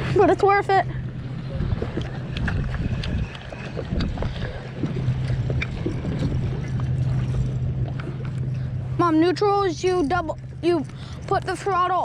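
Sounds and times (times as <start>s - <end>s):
wind noise: 0.0s - 9.0s
outboard motor running: 0.0s - 12.0s
water noise: 0.0s - 12.0s.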